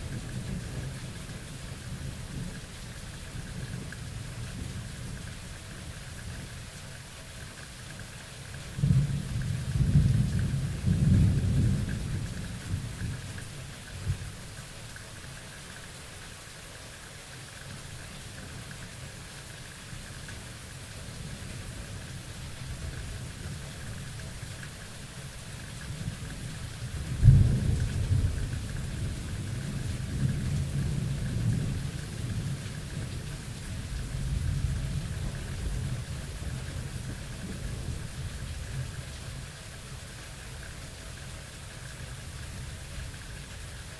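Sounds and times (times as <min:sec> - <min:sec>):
steady rain falling: 0:00.0 - 0:43.9
rolling thunder: 0:08.8 - 0:13.4, 0:25.9 - 0:38.9.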